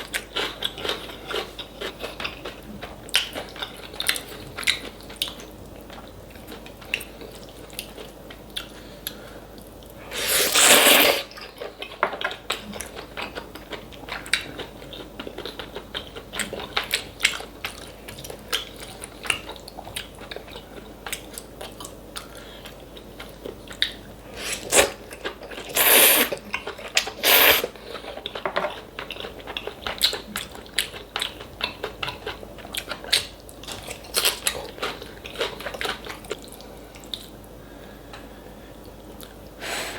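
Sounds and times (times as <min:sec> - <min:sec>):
chewing and crunching: 0:00.0 - 0:37.4
slurping noodles: 0:10.0 - 0:11.3, 0:24.3 - 0:26.4, 0:27.0 - 0:27.7.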